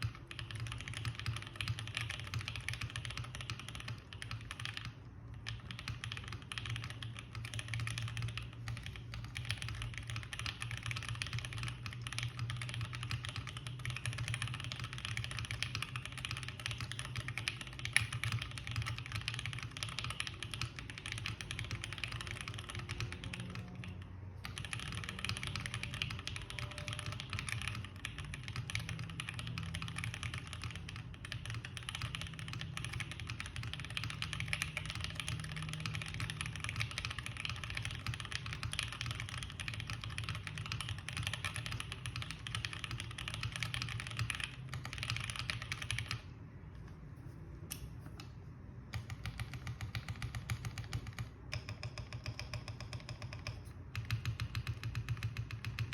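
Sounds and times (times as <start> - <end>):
mechanical keyboard typing: 0.0 - 47.0, 47.6 - 55.9.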